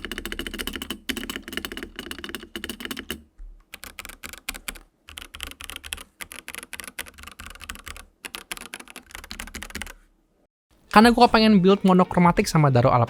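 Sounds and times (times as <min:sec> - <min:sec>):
fast typing on mechanical keyboard: 0:00.0 - 0:10.0.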